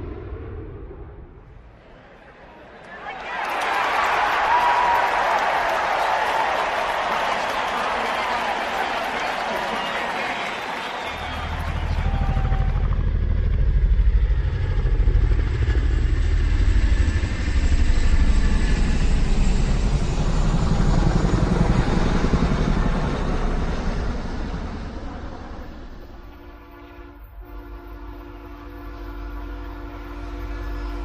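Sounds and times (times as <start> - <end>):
vehicle engine droning: 11.0 - 31.0.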